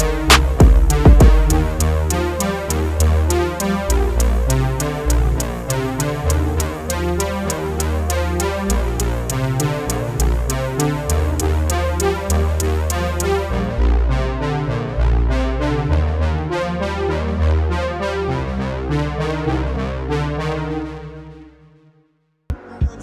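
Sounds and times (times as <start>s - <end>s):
drum machine beat: 0.0s - 2.2s, 5.4s - 13.3s
electronic synthesizer music: 0.0s - 21.6s.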